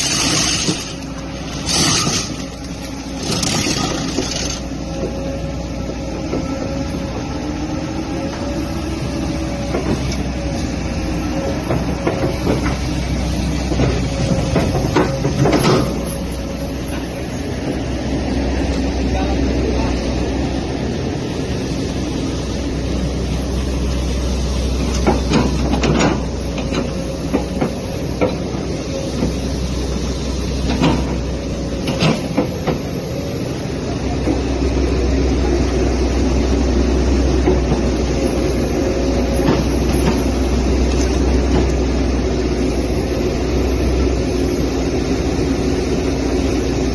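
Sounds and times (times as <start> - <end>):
forestry mulcher drone: 0.0 - 46.9.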